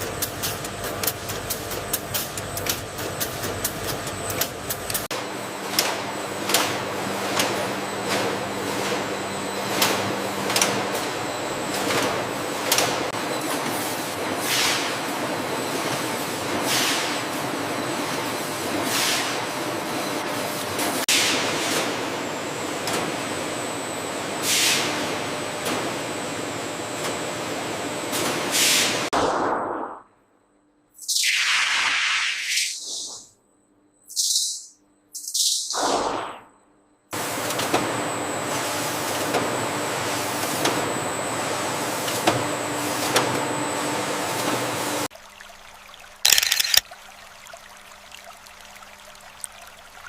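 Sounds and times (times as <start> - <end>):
factory machinery noise: 0.0 - 29.1
machinery running: 46.3 - 46.8
sharp click: 46.3 - 46.8.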